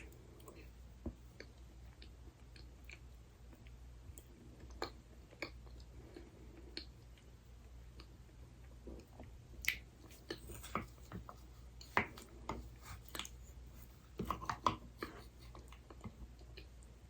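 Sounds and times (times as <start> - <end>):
faint steady hum: 0.0 - 17.0
wet mouth clicks and smacks: 9.6 - 9.9.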